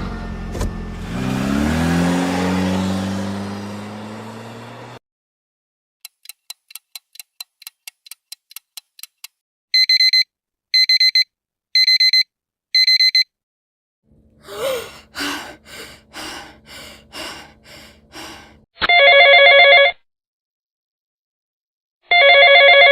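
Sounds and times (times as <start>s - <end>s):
digital alarm clock beeping: 9.8s - 13.3s
woman panting hard: 14.4s - 18.7s
telephone ringing: 18.8s - 20.0s, 22.1s - 22.9s.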